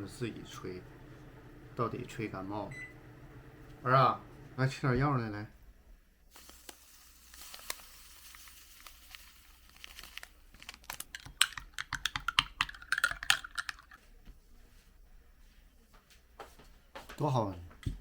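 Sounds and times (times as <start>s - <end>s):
packaging crinkling and tearing: 6.3s - 11.5s.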